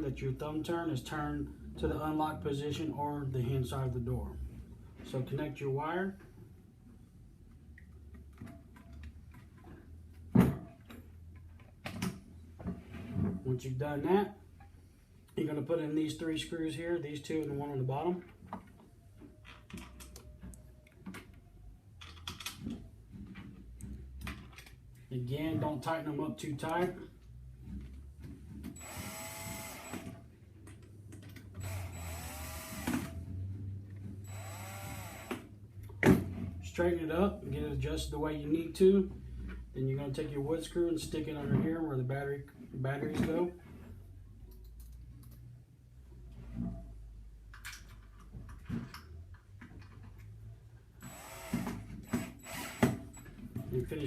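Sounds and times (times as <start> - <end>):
power drill driving screws: 28.8 - 30.2, 31.6 - 33.2, 34.2 - 35.5, 51.0 - 53.3.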